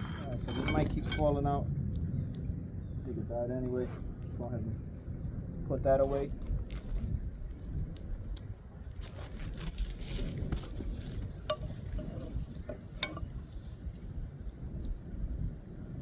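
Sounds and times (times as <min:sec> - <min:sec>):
low steady rumble: 0:00.0 - 0:16.0
light metallic clinks: 0:10.6 - 0:15.5.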